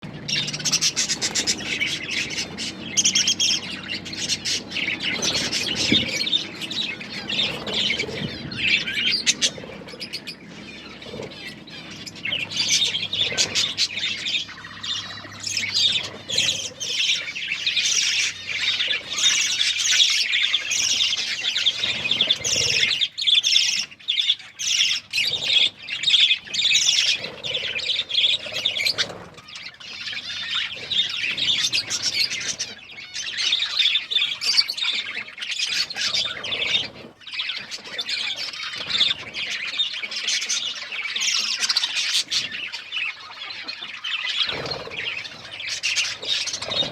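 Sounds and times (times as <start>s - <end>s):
budgerigars chirping: 0.0s - 46.9s.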